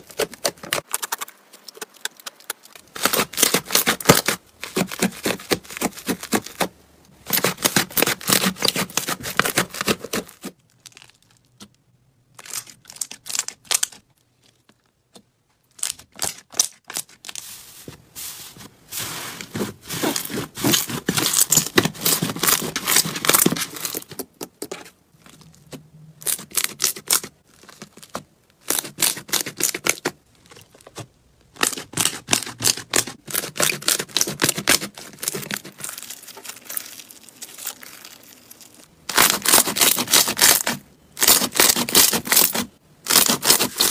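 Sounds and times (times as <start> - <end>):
slime crackling and popping: 31.6 - 43.9.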